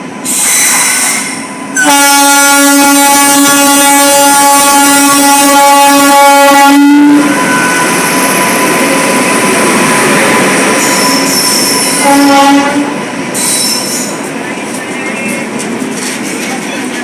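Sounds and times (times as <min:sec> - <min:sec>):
train running: 0:00.0 - 0:17.0
wheels squealing on rails: 0:00.2 - 0:01.5, 0:07.2 - 0:12.3, 0:13.3 - 0:17.0
train horn blast: 0:01.8 - 0:07.4, 0:11.0 - 0:13.0.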